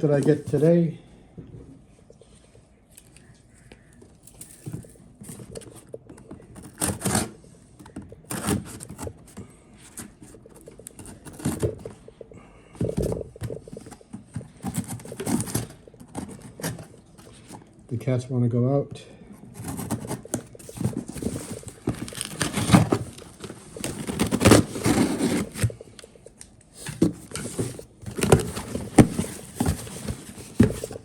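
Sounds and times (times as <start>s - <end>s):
paper and cardboard tearing: 19.6s - 25.7s.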